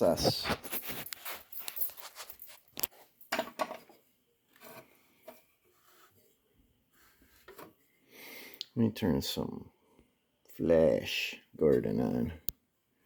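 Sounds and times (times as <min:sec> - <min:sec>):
metal tools clinking and rattling: 0:00.3 - 0:03.9
faint knocks and rubs: 0:00.7 - 0:07.8.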